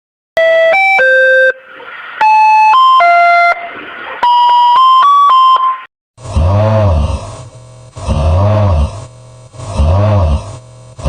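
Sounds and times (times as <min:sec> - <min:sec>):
electronic chime melody: 0:00.4 - 0:05.9.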